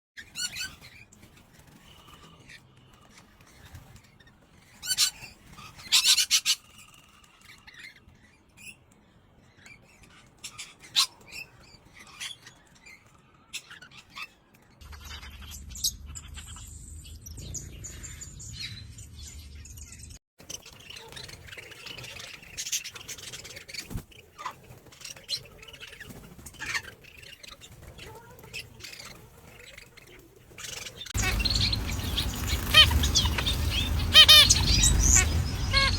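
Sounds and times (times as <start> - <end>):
birds chirping and calling: 0.2 - 35.9.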